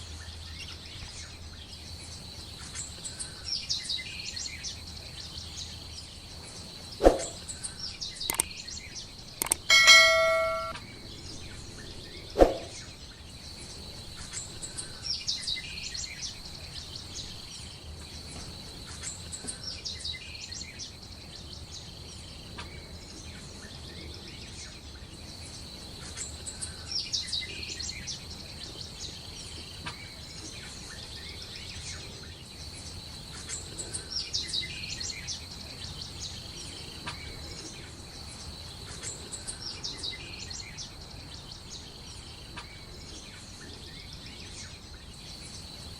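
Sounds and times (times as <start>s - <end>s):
bird chirping: 7.0s - 10.8s
steady high-pitched tone: 9.4s - 10.8s.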